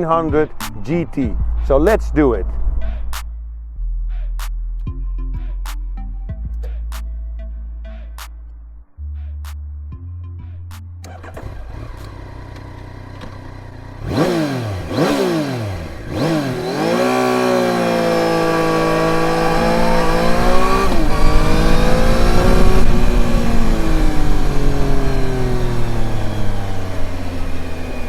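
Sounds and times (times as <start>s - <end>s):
motorcycle engine idling and revving: 0.0s - 3.4s, 10.7s - 28.0s.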